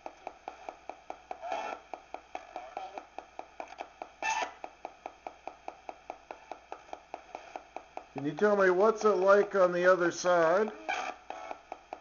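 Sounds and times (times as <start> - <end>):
radio scanning clicks: 0.0 - 12.0
snatches of radio sound: 0.5 - 4.7, 6.4 - 11.8.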